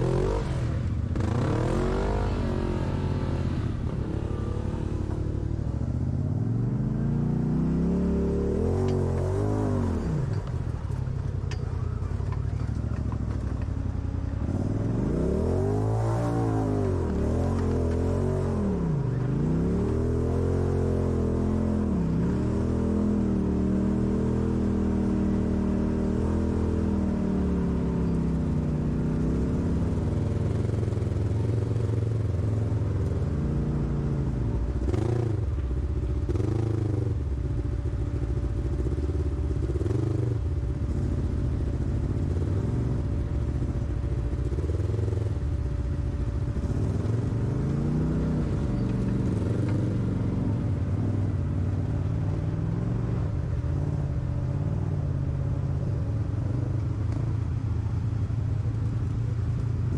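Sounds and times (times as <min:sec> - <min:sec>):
vehicle engine revving: 0:00.0 - 0:10.8.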